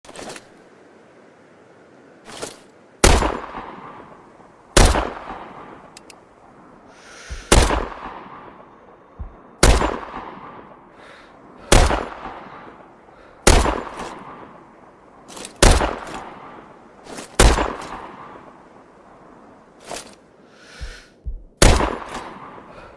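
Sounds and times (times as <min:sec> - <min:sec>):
rifle shots with echo: 0:04.8 - 0:05.6, 0:07.5 - 0:08.4, 0:09.2 - 0:10.6, 0:11.7 - 0:12.5, 0:13.4 - 0:14.4, 0:15.6 - 0:16.3, 0:17.4 - 0:18.2, 0:21.6 - 0:22.5.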